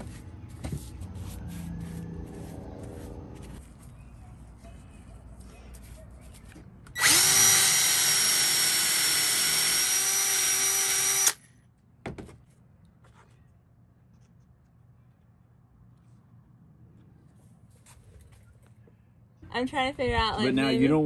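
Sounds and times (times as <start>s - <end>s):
electric power tool whining: 7.0s - 11.4s.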